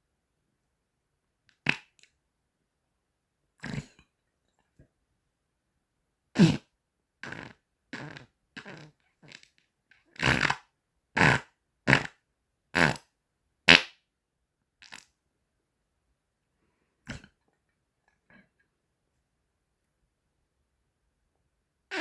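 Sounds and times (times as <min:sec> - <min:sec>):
short farts: 0:01.5 - 0:02.0, 0:03.6 - 0:04.0, 0:06.4 - 0:09.6, 0:10.2 - 0:12.2, 0:12.8 - 0:13.1, 0:13.7 - 0:14.0, 0:14.8 - 0:15.1, 0:17.0 - 0:17.4.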